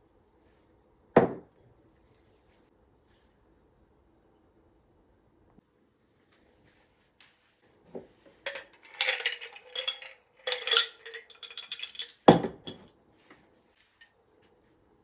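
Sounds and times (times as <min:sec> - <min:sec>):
object set down with knock: 0:01.2 - 0:01.4
dishes and cutlery clinking: 0:08.4 - 0:12.9.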